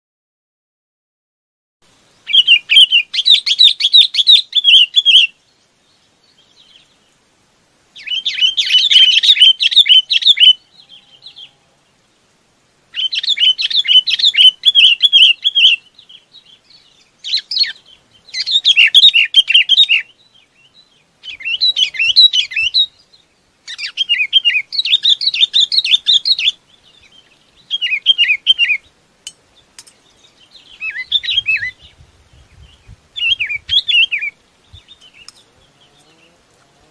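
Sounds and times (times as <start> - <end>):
bulbul warbling call: 2.2 - 5.4, 8.0 - 11.6, 12.9 - 15.9, 17.2 - 20.2, 21.2 - 23.0, 23.7 - 29.9, 30.6 - 32.0, 33.2 - 36.4.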